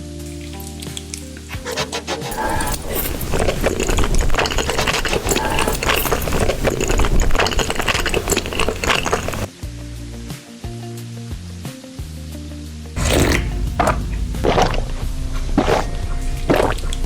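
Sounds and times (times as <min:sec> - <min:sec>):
chewing crunchy food: 0:00.4 - 0:09.5, 0:13.0 - 0:17.0.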